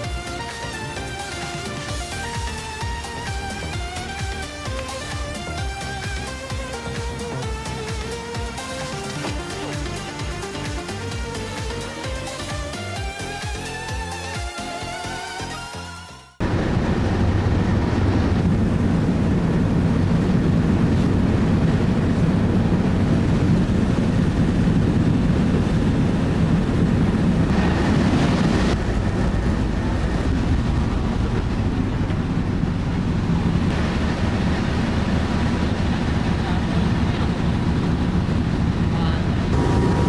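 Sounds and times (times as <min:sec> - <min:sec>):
low engine rumble: 0:16.4 - 0:40.0
wind noise on microphone: 0:16.4 - 0:40.0.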